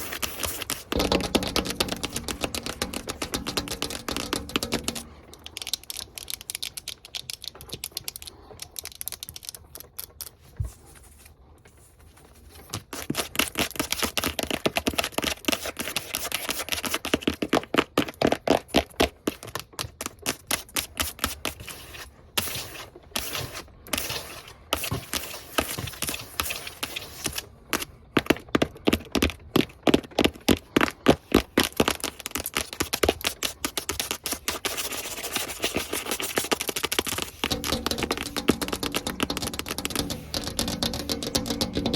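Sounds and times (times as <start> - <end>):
fingernails tapping hard surfaces: 0.4 - 6.4, 37.1 - 41.9.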